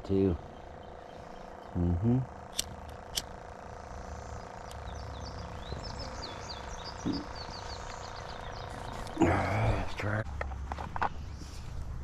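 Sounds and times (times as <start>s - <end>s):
bird chirping: 0.0s - 3.2s, 3.8s - 9.9s
steady hum: 0.0s - 12.0s.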